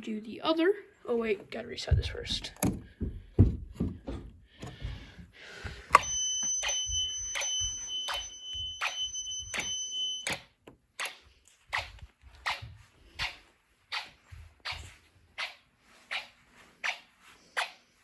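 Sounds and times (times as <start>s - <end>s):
relay ticking: 5.9s - 11.2s
piezo buzzer tone: 6.0s - 10.4s.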